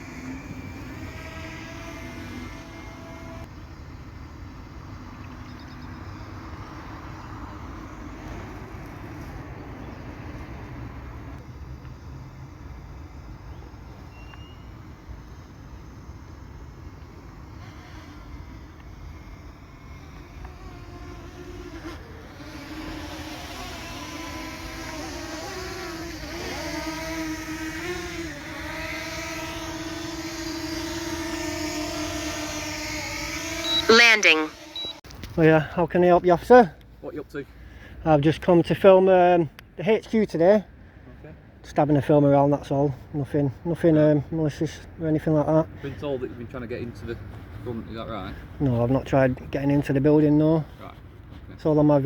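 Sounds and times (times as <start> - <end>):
drone propellers humming: 0.0 - 5.2, 6.4 - 35.0.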